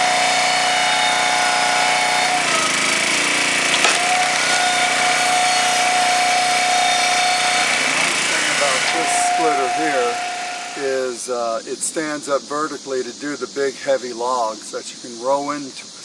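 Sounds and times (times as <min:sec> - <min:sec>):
log splitter engine running: 0:00.0 - 0:11.1
wood cracking: 0:03.0 - 0:05.3.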